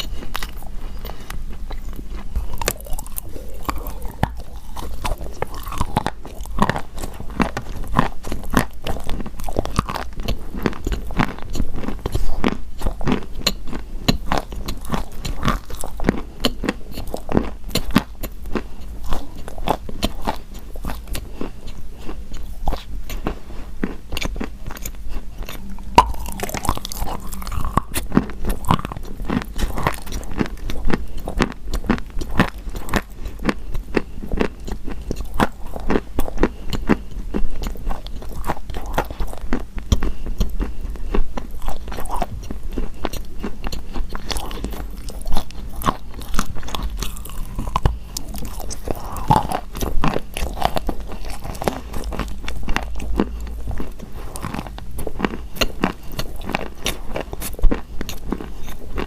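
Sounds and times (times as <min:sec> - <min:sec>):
chewing chalk crunching: 0:00.0 - 0:59.0.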